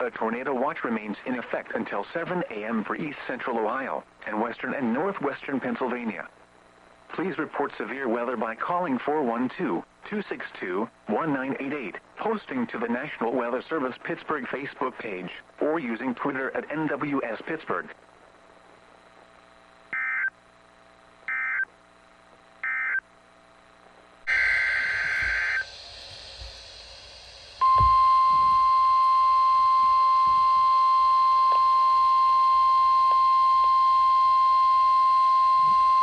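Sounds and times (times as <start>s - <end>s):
steady warning alarm tone: 19.9s - 20.3s, 21.3s - 21.7s, 22.6s - 23.0s, 24.2s - 36.0s
digital data tone bleeps: 24.3s - 25.7s, 27.6s - 36.0s.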